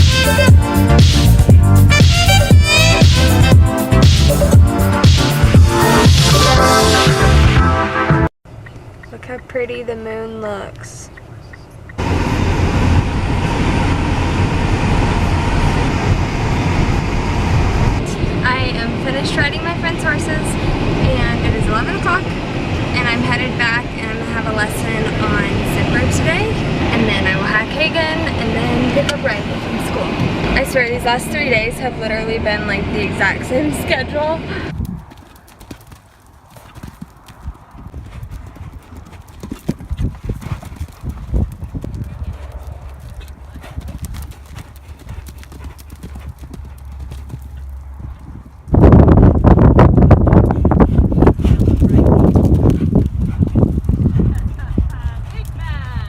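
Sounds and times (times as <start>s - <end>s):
car road and engine rumble: 8.5s - 35.5s, 38.9s - 56.0s
horse hooves clip-clopping: 34.7s - 56.0s.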